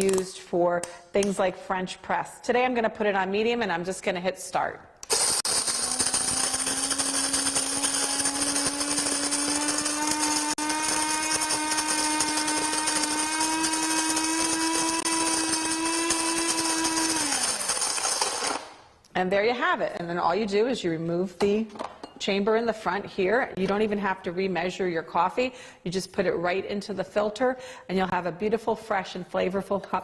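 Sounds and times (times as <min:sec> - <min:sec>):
coffee grinder motor whining: 0:05.0 - 0:18.8.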